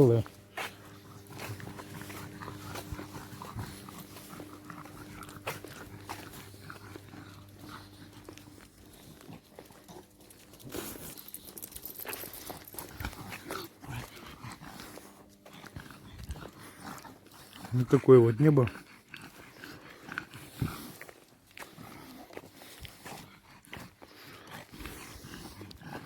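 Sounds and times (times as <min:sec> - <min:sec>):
dog rustling and clicking: 0:00.0 - 0:17.8.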